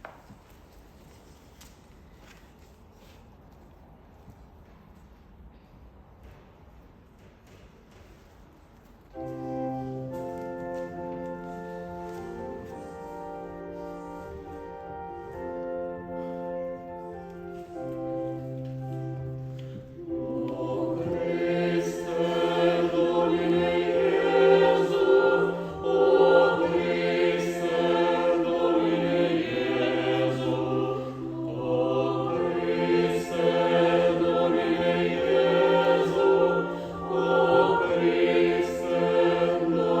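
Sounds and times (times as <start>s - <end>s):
church choir singing: 9.1s - 40.0s.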